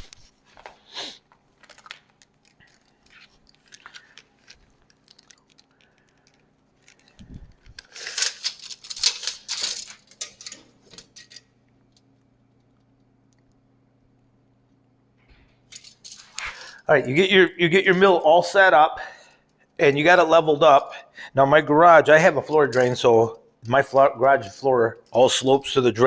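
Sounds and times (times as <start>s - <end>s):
loud rustling and crinkling: 0.0s - 11.2s
faint low hum: 0.0s - 26.0s.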